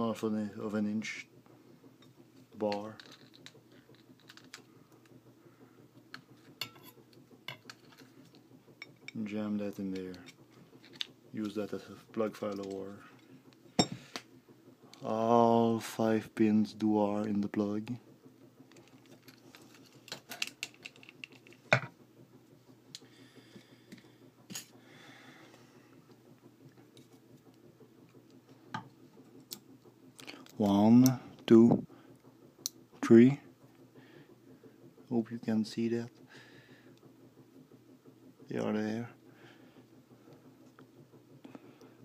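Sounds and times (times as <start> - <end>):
metal tools clicking and tapping: 6.1 - 8.1, 13.8 - 14.0, 18.7 - 21.9.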